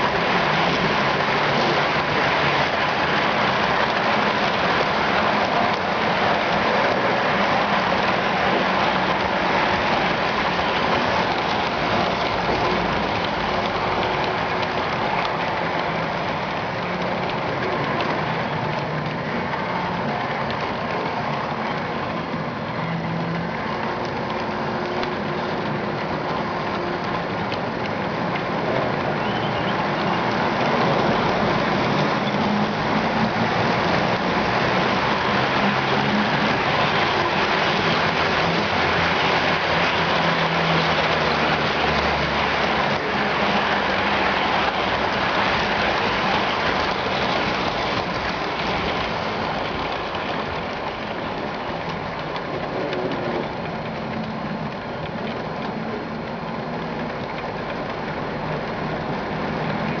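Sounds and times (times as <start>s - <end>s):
model train wheels rattling on track: 0.0s - 60.0s.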